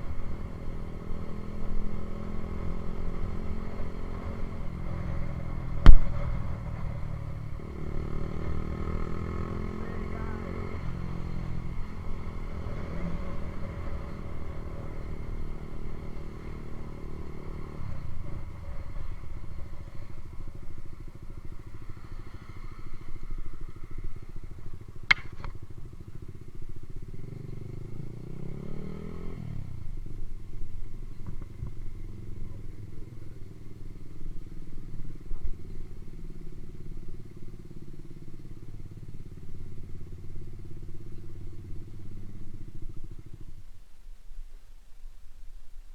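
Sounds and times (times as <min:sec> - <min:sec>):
motorcycle engine idling and revving: 0:00.0 - 0:44.5
sharp click: 0:25.1 - 0:25.6.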